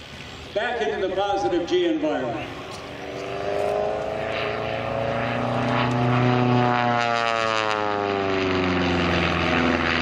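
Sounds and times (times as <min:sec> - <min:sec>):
propeller plane engine in flight: 0:02.3 - 0:10.0.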